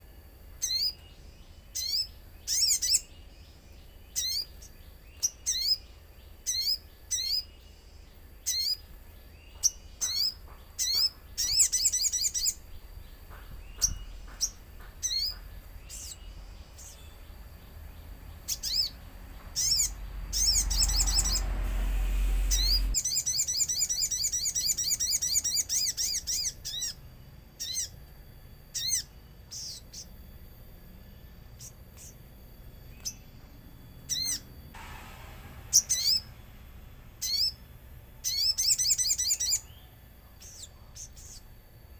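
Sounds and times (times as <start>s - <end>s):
songbird chirping and chattering: 0.5s - 21.6s, 22.3s - 27.0s, 27.6s - 28.0s, 28.8s - 30.2s, 31.6s - 32.2s, 34.0s - 34.5s, 37.2s - 41.5s
low rumble: 12.6s - 23.1s, 34.6s - 38.4s.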